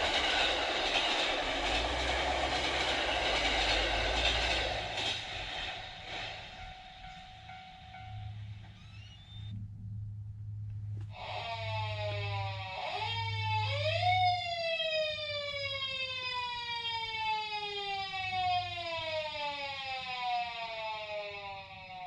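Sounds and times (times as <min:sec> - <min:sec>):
steady low hum: 0:00.0 - 0:15.9
siren-like sliding tone: 0:06.1 - 0:09.6, 0:11.1 - 0:16.8.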